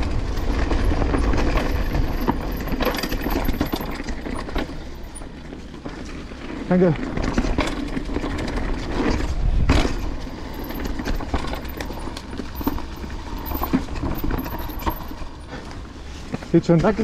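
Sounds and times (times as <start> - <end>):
wind rumble on microphone: 0.0 - 4.6, 7.1 - 15.5
bike chain rattling: 0.0 - 17.0
bike tyres on dirt and stones: 0.0 - 17.0.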